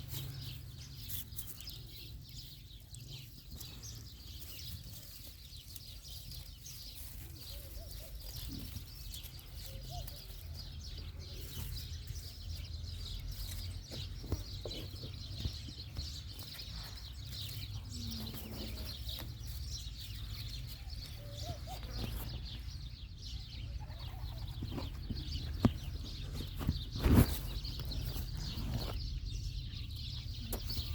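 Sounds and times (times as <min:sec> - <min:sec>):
small birds chirping: 0:00.0 - 0:30.9
baby goats bleating: 0:23.7 - 0:24.6.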